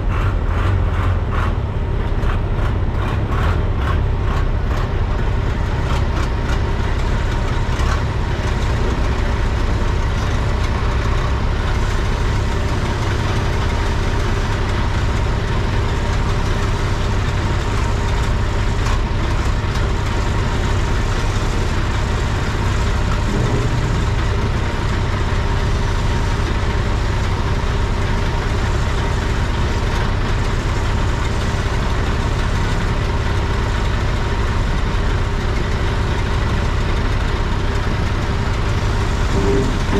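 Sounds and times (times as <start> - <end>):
diesel engine running steadily: 0.0 - 39.9.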